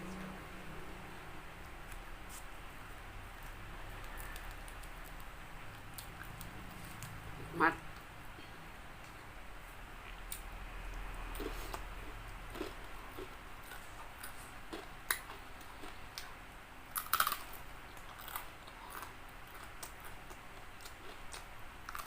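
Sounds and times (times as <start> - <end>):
person chewing crispy food: 3.3 - 7.2, 10.0 - 22.0.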